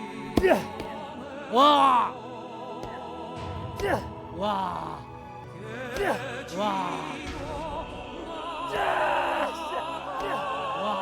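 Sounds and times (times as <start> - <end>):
operatic singing: 0.0 - 11.0.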